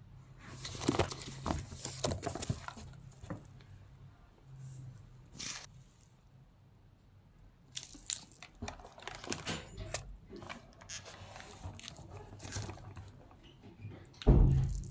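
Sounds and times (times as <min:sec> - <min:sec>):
handbag packaging rustling: 0:00.5 - 0:03.5, 0:07.7 - 0:13.4.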